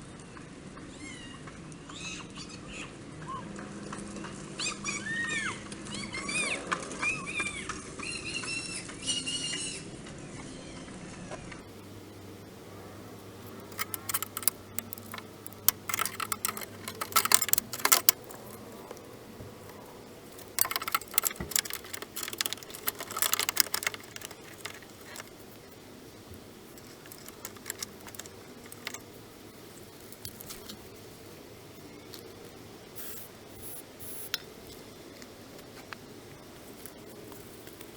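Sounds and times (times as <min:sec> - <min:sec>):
scattered clicks: 0:11.7 - 0:31.0, 0:33.0 - 0:35.7
metal tools clinking and rattling: 0:13.6 - 0:19.0, 0:19.7 - 0:25.5, 0:26.8 - 0:29.1.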